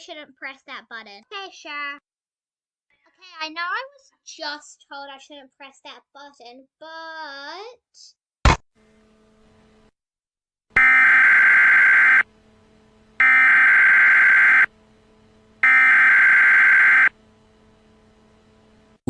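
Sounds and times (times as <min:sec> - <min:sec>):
alarm buzzer blaring: 0:10.7 - 0:17.3.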